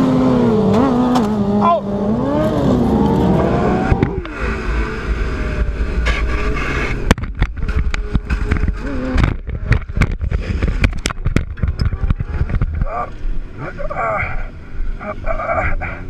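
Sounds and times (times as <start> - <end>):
motorcycle engine revving: 0.0 - 13.2
wind rumble on microphone: 2.6 - 13.5
sharp clicks and knocks: 6.9 - 12.9.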